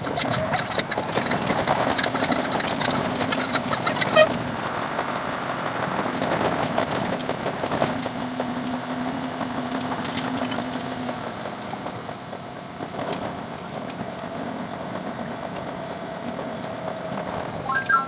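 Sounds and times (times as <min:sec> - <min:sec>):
sped-up train clatter: 0:00.0 - 0:18.0
short high-pitched squeak: 0:03.7 - 0:04.4, 0:17.6 - 0:18.0.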